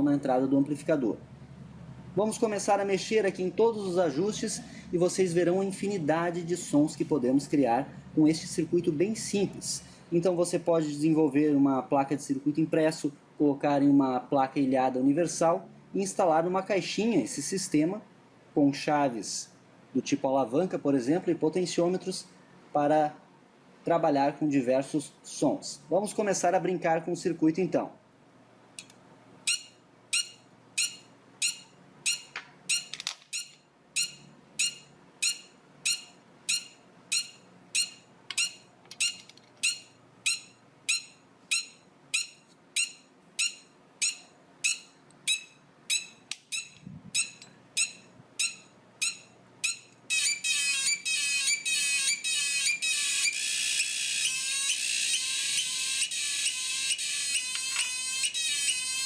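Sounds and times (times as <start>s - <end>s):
electronic chirping beeps: 29.5s - 59.0s.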